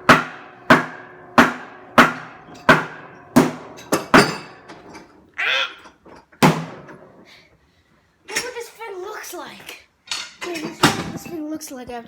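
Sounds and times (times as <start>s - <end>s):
hammer striking steel tank: 0.0s - 4.9s, 6.4s - 6.9s
pitched voice-like sound: 5.4s - 5.8s.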